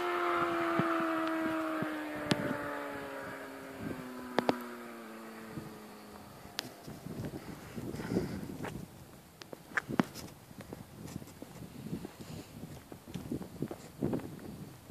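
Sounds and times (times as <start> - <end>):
motorcycle engine moving away: 0.0 - 10.4.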